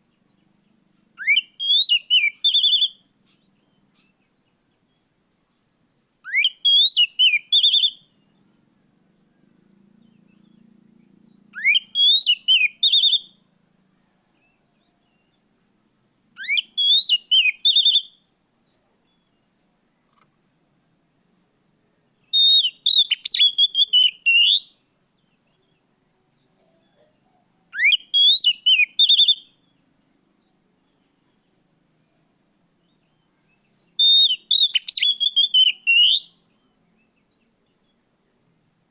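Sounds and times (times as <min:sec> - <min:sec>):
bird singing whistled phrases: 0:01.2 - 0:03.0, 0:06.2 - 0:08.1, 0:11.5 - 0:13.4, 0:16.4 - 0:18.2, 0:22.3 - 0:24.8, 0:27.7 - 0:29.6, 0:33.9 - 0:36.4.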